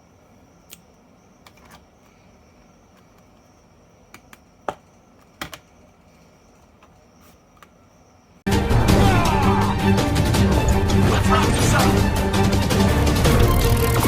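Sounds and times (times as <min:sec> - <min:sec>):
faint steady hiss: 0:00.0 - 0:08.5.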